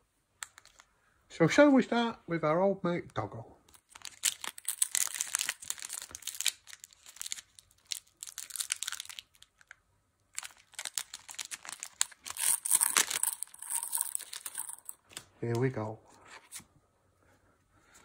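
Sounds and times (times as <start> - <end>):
foil wrapper crinkling and tearing: 3.7 - 15.2.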